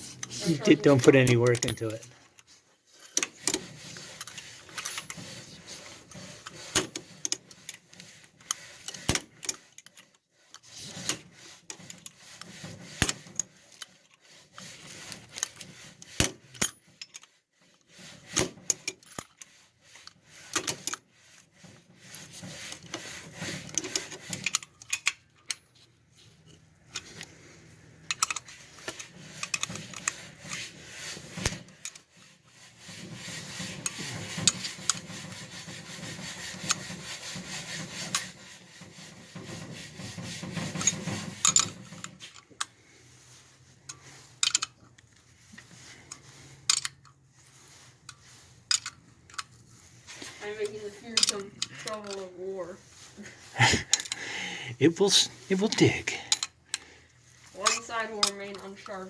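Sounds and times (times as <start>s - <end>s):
metal scraping strokes: 27.0s - 59.0s.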